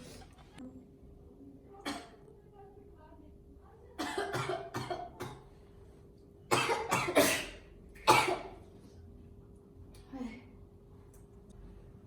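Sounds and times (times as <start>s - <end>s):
woman coughing: 1.8s - 2.2s, 4.0s - 5.5s, 6.5s - 8.6s.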